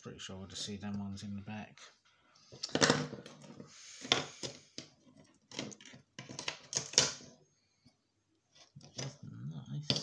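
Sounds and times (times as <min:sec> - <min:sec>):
plastic parts clicking and knocking: 0:02.5 - 0:07.4, 0:08.5 - 0:10.0.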